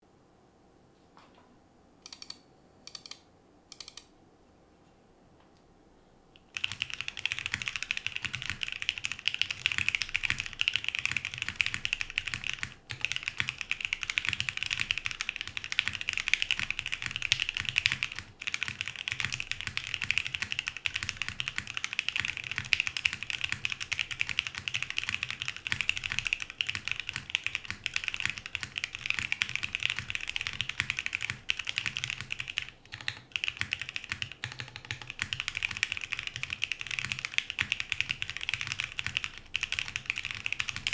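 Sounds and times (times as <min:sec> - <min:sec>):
fast typing on mechanical keyboard: 0:06.5 - 0:40.9.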